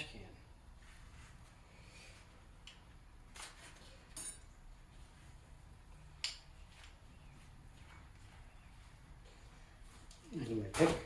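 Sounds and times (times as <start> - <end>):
small metal parts clinking: 4.0 - 4.5.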